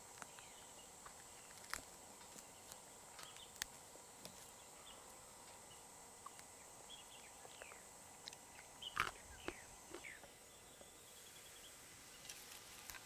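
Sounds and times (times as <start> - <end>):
steady high hiss: 0.0 - 13.0
small ticks: 0.1 - 4.5.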